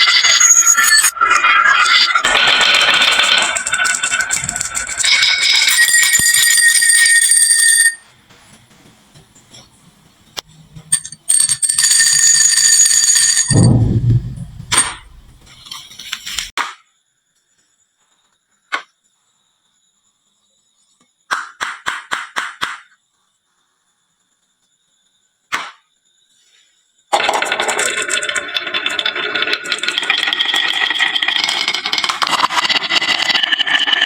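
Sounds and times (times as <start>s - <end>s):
marbles rolling and clicking: 0.0s - 8.0s, 27.2s - 34.0s.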